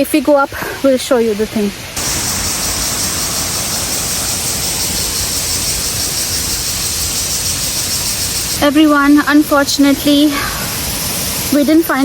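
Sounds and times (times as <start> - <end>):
waterfall rushing: 1.9 - 8.6.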